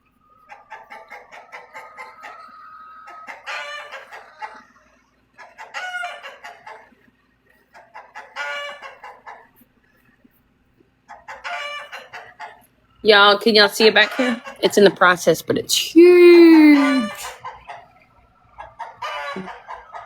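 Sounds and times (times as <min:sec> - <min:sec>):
chickens clucking softly: 0:00.2 - 0:10.1, 0:11.1 - 0:12.7, 0:16.8 - 0:20.0.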